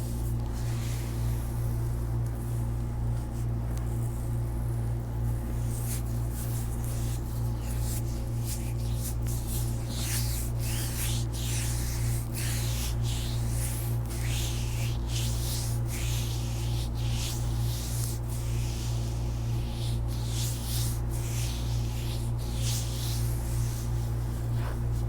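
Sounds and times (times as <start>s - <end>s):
steady low hum: 0.0s - 25.0s
hands rubbing skin: 5.6s - 25.0s.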